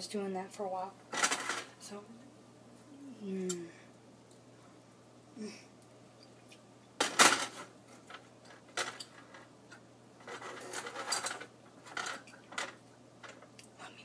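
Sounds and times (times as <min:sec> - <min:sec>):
dishes and utensils clattering: 0:10.2 - 0:13.5.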